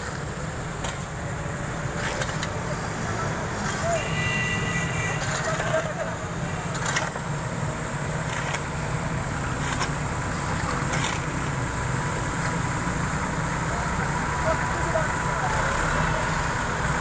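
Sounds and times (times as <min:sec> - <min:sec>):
engine rumbling: 0:00.0 - 0:17.0.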